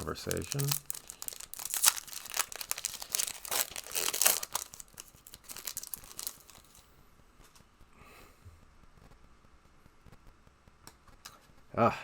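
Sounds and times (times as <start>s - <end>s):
card pack wrappers crinkling: 0.0s - 6.8s.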